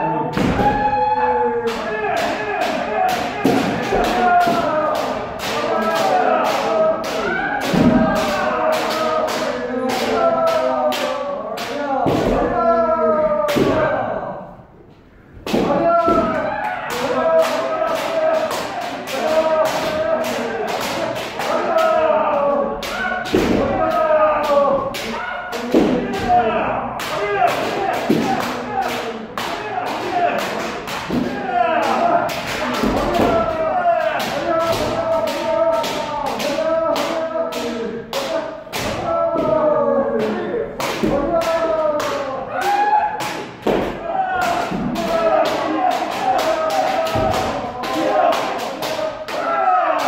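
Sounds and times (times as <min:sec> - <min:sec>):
people shouting kiai: 0:00.0 - 0:14.5, 0:15.4 - 0:50.0
bamboo swords striking: 0:01.6 - 0:12.5, 0:13.5 - 0:13.9, 0:15.4 - 0:26.4.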